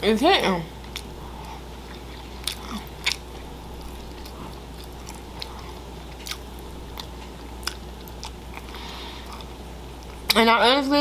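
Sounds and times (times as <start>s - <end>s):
chewing meat: 0.8s - 10.4s.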